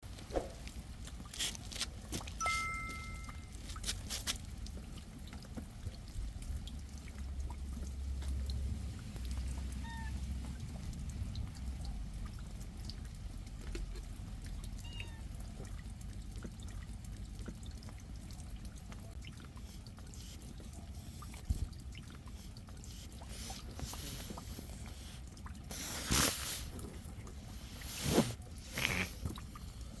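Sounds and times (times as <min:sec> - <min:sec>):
rain dripping and trickling: 0:00.0 - 0:30.0
brushing rustling bursts: 0:23.0 - 0:26.7, 0:27.5 - 0:29.2.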